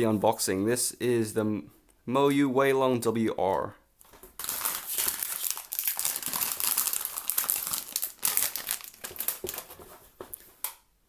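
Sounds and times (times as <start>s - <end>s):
packaging crinkling: 4.1s - 10.7s.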